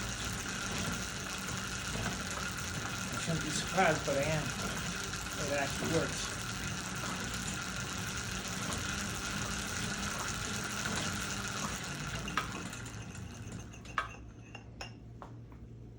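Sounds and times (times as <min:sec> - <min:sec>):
lathe whirring: 0:00.0 - 0:14.2.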